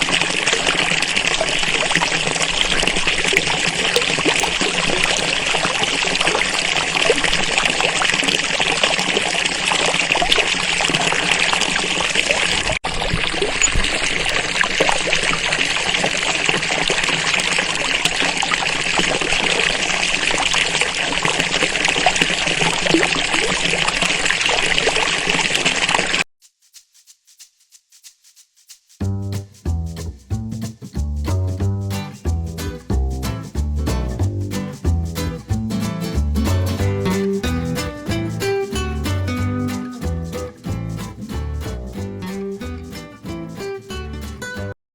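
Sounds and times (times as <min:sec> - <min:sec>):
falling water splashing: 0:00.0 - 0:26.2.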